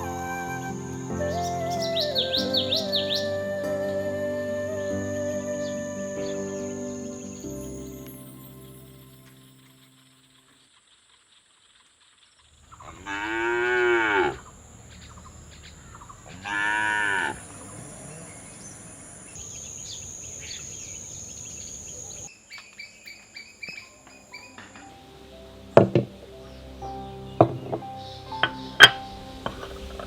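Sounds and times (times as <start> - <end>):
cow mooing: 12.9 - 14.4, 16.4 - 17.4.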